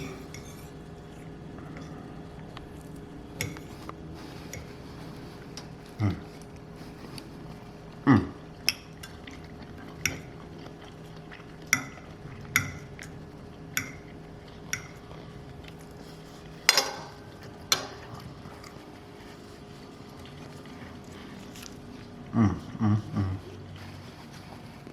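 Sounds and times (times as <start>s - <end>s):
faint steady hum: 0.0s - 24.9s
cutlery clicking on a dish: 16.7s - 18.0s.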